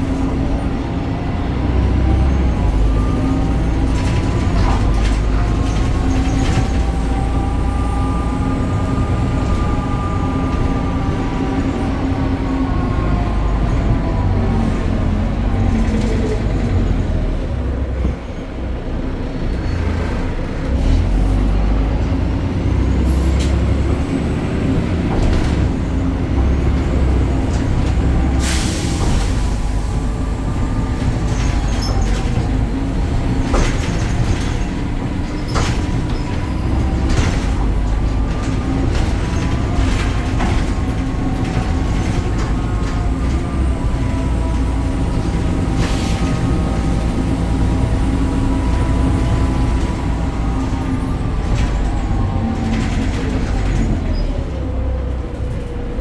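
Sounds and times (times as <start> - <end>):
bus engine whining: 0.0 - 56.0
air brake hiss: 28.4 - 30.0.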